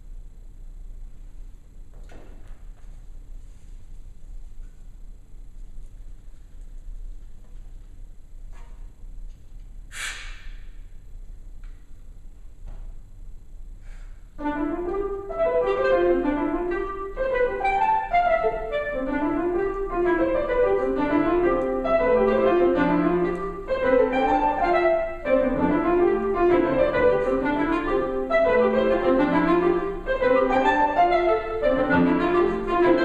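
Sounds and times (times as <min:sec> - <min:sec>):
clarinet: 0:14.4 - 0:33.0
piano chords: 0:14.4 - 0:33.0.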